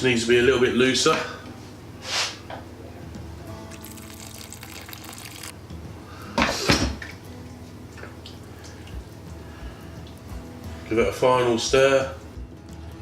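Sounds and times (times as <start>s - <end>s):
water splashing into pot: 3.7s - 5.5s.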